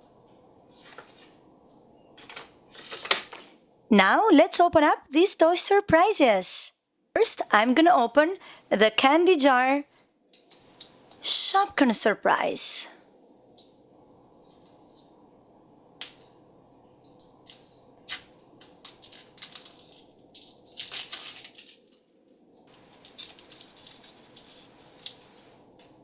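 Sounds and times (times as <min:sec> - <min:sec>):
packaging crinkling and rustling: 0:02.2 - 0:03.5, 0:17.5 - 0:25.6.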